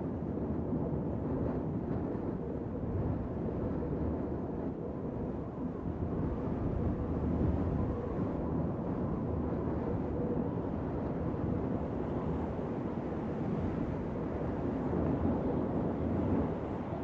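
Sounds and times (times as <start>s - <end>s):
wind on microphone: 0.0s - 17.0s.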